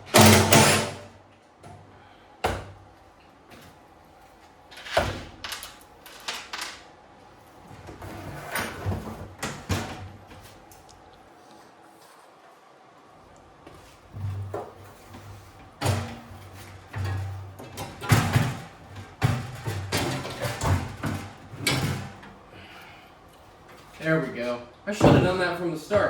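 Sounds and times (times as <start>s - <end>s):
tools and metal parts clunking: 0.0s - 1.1s, 4.7s - 6.8s, 14.2s - 22.4s.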